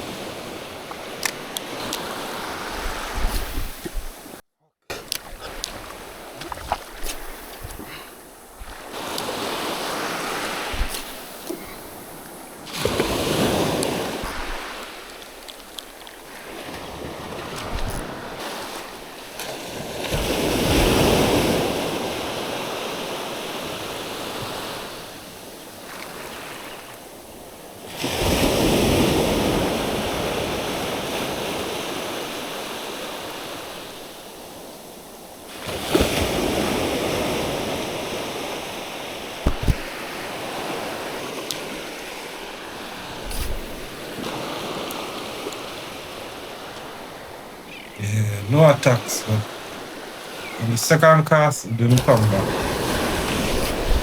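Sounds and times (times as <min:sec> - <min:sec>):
sea waves breaking on shore: 0:00.0 - 0:54.0.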